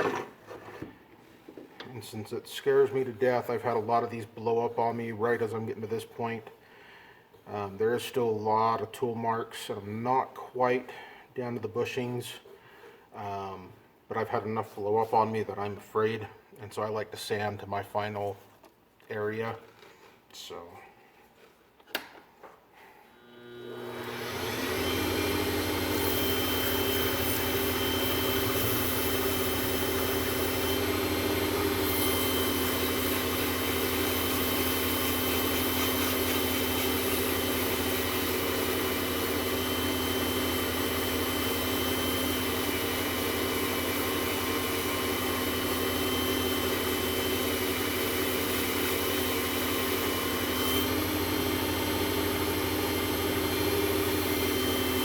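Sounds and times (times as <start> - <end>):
lathe motor humming: 23.2 - 55.0.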